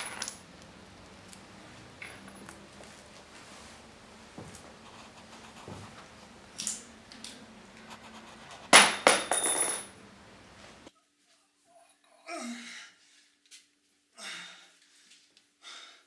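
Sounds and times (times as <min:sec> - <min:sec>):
clattering with metallic ring: 0:08.8 - 0:10.0.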